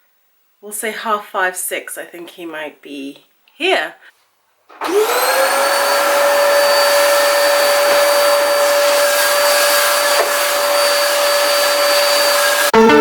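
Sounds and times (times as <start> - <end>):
vacuum cleaner running: 4.7 - 12.8.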